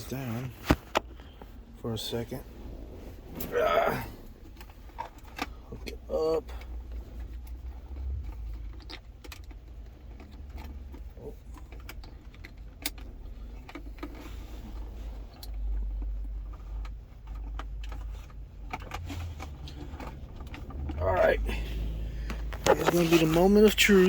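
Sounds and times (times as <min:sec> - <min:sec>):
clicks and rattles of handling cable: 0:00.1 - 0:01.6, 0:04.4 - 0:24.0
low rumble: 0:01.1 - 0:08.8.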